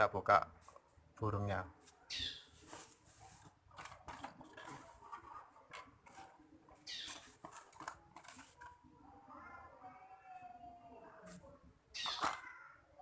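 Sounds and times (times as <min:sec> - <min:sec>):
scraping in bird cage: 0:02.1 - 0:08.8, 0:12.0 - 0:12.4.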